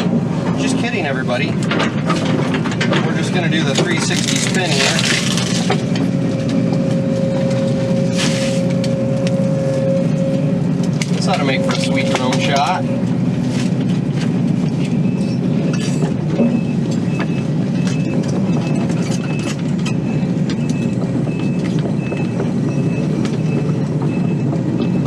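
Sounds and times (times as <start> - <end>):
excavator engine and hydraulics: 0.0 - 25.0
high electronic alarm beeping: 5.9 - 13.4.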